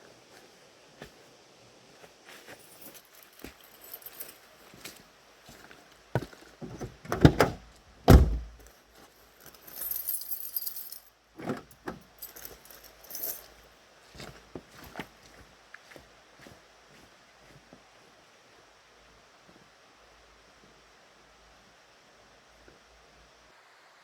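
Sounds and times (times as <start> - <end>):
rustling: 2.4 - 4.9, 8.3 - 11.1, 12.0 - 13.6
loud thumps: 8.1 - 8.6.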